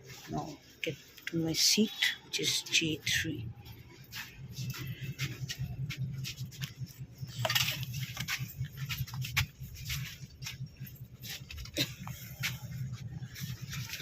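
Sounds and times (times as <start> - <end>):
bus cabin hum: 0.0 - 14.0.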